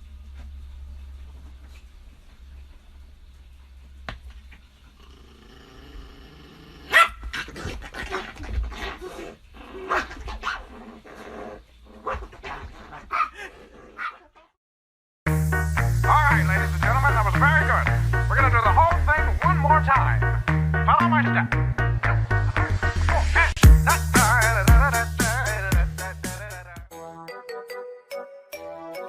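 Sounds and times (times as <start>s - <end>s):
dog barking and growling: 5.0s - 14.6s
music: 15.3s - 29.0s.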